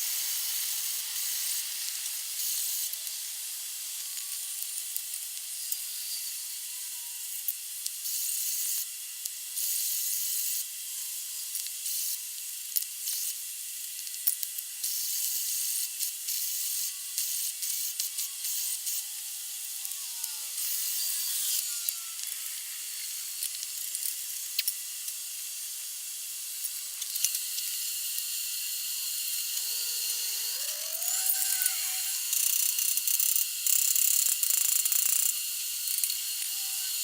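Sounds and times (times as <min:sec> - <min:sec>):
rapid ratchet clicks: 0:14.0 - 0:37.0.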